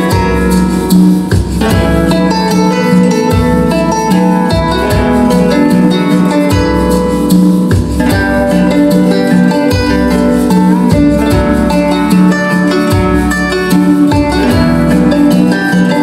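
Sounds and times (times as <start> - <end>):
instrumental music with plucked guitar: 0.0 - 16.0.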